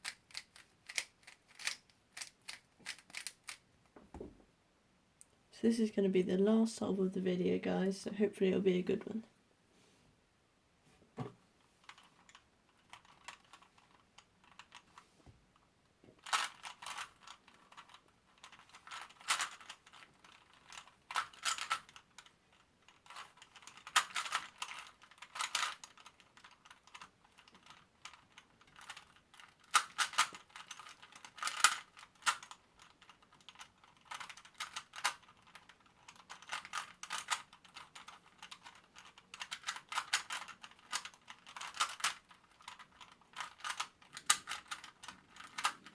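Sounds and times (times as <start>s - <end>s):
puzzle cube clacking: 0.0s - 3.7s, 11.8s - 15.0s, 16.2s - 22.3s, 22.9s - 45.9s.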